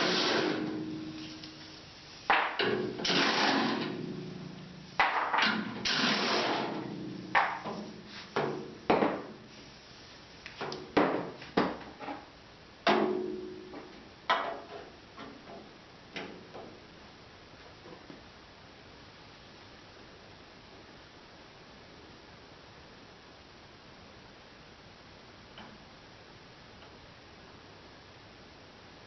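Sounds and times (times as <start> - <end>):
metal scraping: 0.0 - 1.8, 2.6 - 4.7, 5.5 - 8.3.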